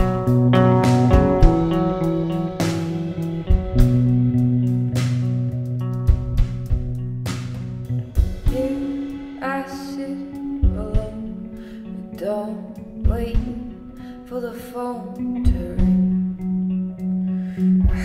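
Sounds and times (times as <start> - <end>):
bass notes: 0.0 - 12.2, 15.2 - 18.0
guitar: 0.0 - 18.0
person singing: 8.4 - 16.2.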